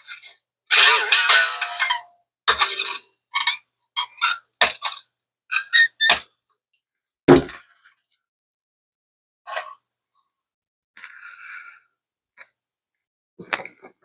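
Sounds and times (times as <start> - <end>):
loud thunk: 7.3 - 7.6.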